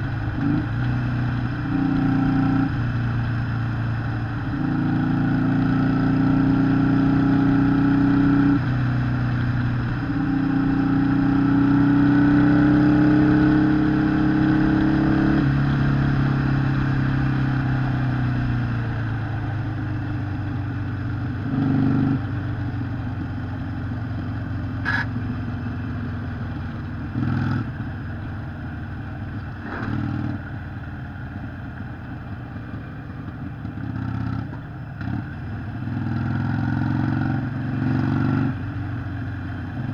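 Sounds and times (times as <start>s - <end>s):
motorcycle engine running: 0.0s - 39.9s
motorcycle throttle blips: 17.8s - 35.5s
sharp click: 24.8s - 25.1s.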